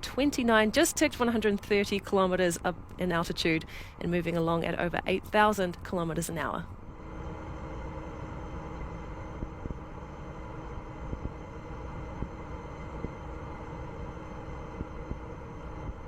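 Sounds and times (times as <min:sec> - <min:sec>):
rocket engine rumble: 0:06.8 - 0:16.0.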